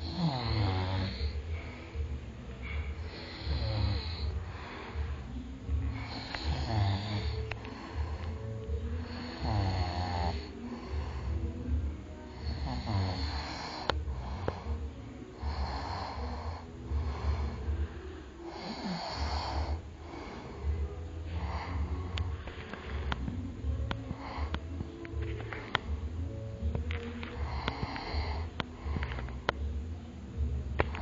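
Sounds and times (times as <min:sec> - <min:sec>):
person snoring: 0:00.0 - 0:01.4, 0:03.0 - 0:11.4, 0:12.3 - 0:17.8, 0:18.4 - 0:23.3, 0:27.3 - 0:29.5.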